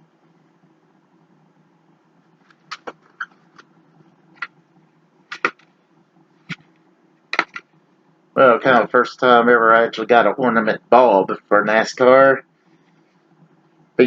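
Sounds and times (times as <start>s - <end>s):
packaging clicks and taps: 7.4s - 7.6s.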